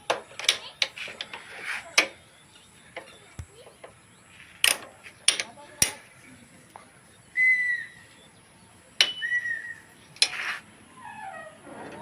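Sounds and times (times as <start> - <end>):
metal tools clinking on bolts: 4.6 - 6.1, 9.0 - 9.3, 10.2 - 10.6
high whistle-like chirps: 7.3 - 8.2, 9.0 - 9.9.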